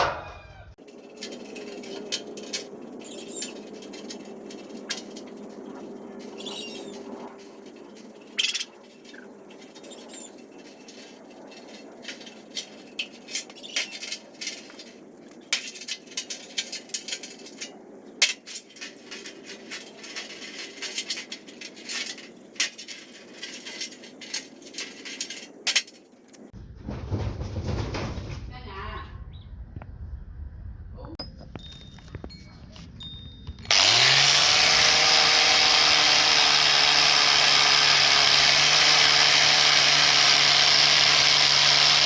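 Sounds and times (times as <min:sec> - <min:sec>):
small metal parts clicking: 0:00.8 - 0:26.5.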